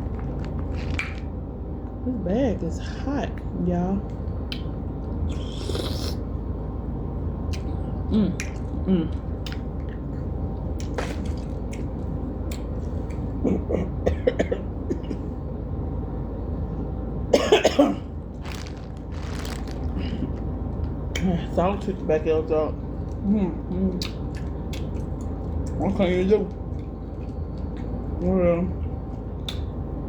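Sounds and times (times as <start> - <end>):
eating and handling noises: 0.0 - 2.0, 3.4 - 6.4, 8.4 - 13.6, 18.2 - 29.8
steady low hum: 0.0 - 30.0
person coughing: 13.6 - 15.3, 17.4 - 18.0.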